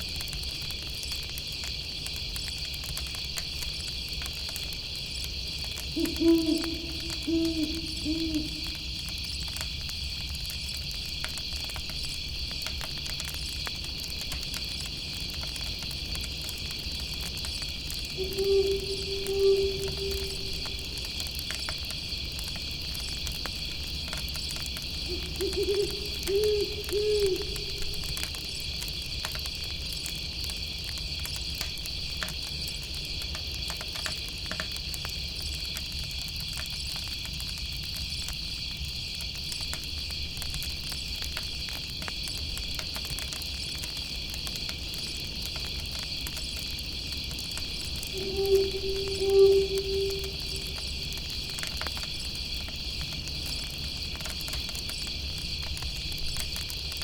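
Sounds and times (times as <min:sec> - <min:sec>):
campfire crackling: 0:00.0 - 0:57.0
owl hooting: 0:05.9 - 0:09.0, 0:18.1 - 0:21.3, 0:25.0 - 0:28.6, 0:48.0 - 0:51.6
high insect chirring: 0:06.0 - 0:09.4, 0:18.1 - 0:21.4, 0:24.8 - 0:29.0, 0:48.1 - 0:52.3.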